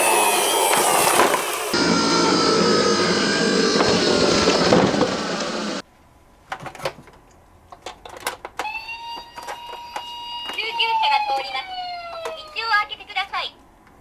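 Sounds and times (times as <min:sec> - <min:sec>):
toys clicking and knocking: 0:06.5 - 0:11.6
faint toy siren tones: 0:08.6 - 0:12.9.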